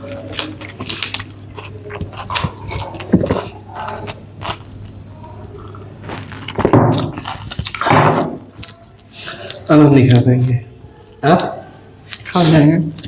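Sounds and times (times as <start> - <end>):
wet mouth noises: 0.0 - 7.9
biting and chewing: 0.0 - 10.3.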